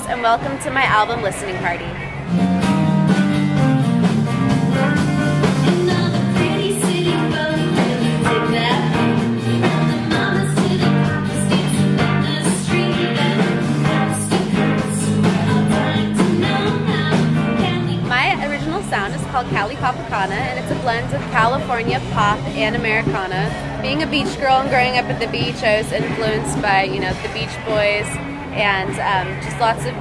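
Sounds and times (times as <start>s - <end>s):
guitar: 0.0s - 30.0s
steady beat: 0.0s - 30.0s
pop song with singing: 5.4s - 30.0s.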